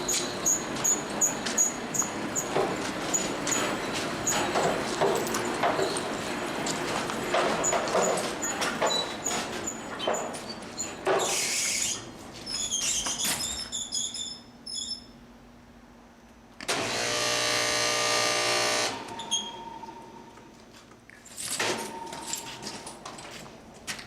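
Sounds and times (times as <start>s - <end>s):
knocks and clatter: 2.4s - 11.4s.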